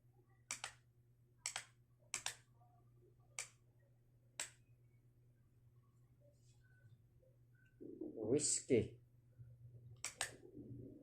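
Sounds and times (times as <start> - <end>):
signalling light switch clicking: 0.5 - 0.8, 1.4 - 2.4, 10.0 - 10.3.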